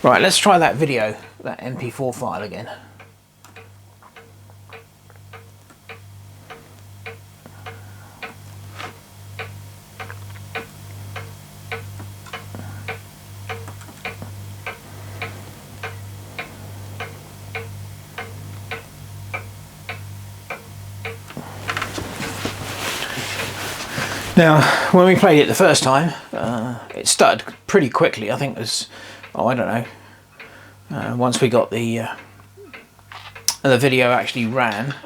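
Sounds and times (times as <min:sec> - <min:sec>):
clock-like ticking: 0:03.0 - 0:08.4, 0:09.4 - 0:21.4
low pulsing hum: 0:05.9 - 0:24.9.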